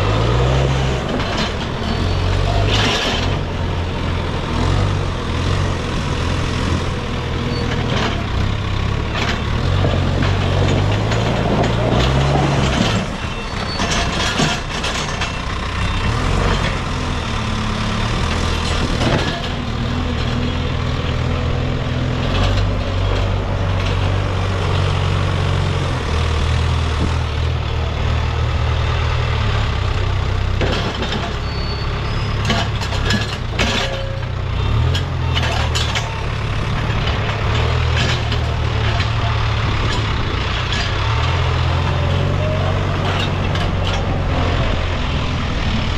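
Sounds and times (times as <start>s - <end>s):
diesel engine under varying load: 0.0s - 45.9s
metal knocks and clanks: 7.5s - 15.7s, 18.2s - 24.3s, 32.4s - 45.1s.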